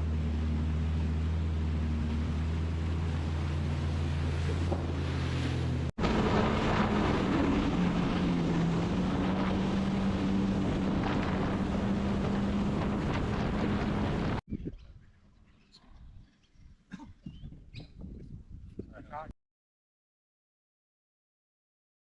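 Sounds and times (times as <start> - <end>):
jet ski engine running: 0.0 - 14.4
water rushing: 0.0 - 14.4
wind buffeting microphone: 6.0 - 19.3.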